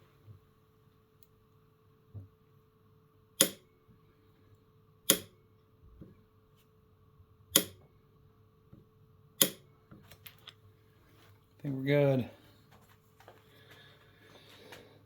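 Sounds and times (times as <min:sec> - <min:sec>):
faint steady hum: 0:00.0 - 0:15.0
torque wrench clicks: 0:07.6 - 0:07.8.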